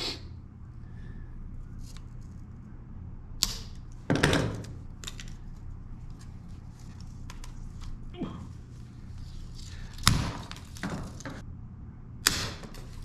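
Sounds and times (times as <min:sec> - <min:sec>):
sharp snap: 0:03.4 - 0:03.8, 0:12.2 - 0:12.7.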